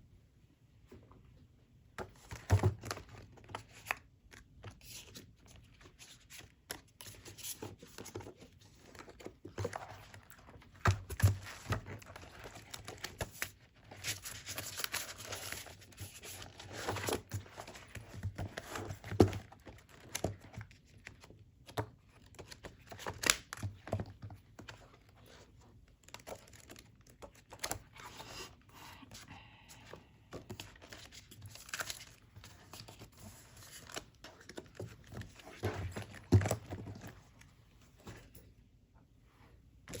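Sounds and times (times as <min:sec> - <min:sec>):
packaging crinkling and tearing: 0:30.5 - 0:35.4.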